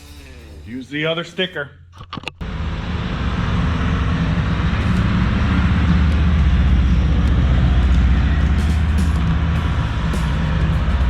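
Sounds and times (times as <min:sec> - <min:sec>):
motorcycle engine idling: 0:04.1 - 0:11.0.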